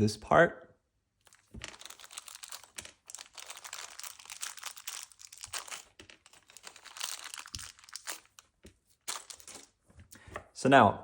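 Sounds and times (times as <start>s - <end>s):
small plastic parts clicking: 1.2s - 8.5s
plastic packaging crinkling: 1.2s - 9.8s.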